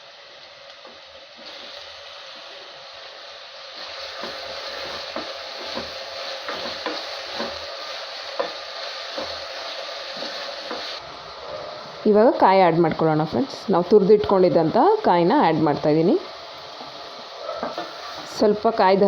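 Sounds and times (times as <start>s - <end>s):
onions frying in oil: 0.0s - 19.0s
spatula scraping pan: 3.8s - 11.0s.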